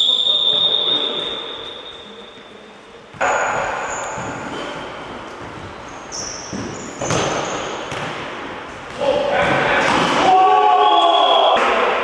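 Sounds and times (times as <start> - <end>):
shoe squeaks: 0.0 - 7.9
ball kick thump echoing: 6.5 - 8.3.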